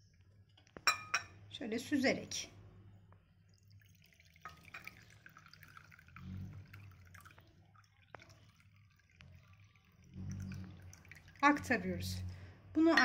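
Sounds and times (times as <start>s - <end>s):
liquid trickling and dripping: 3.0s - 12.5s.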